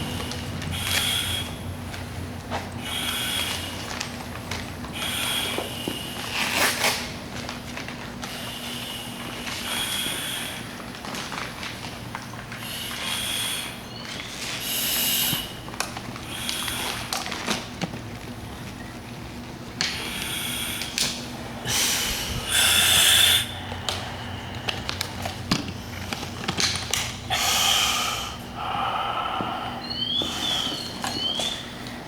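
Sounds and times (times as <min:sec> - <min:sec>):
hissing breaths through face mask: 0:00.0 - 0:01.7, 0:02.8 - 0:04.0, 0:04.9 - 0:07.0, 0:08.2 - 0:10.8, 0:12.6 - 0:17.1, 0:19.9 - 0:26.4, 0:27.3 - 0:32.0.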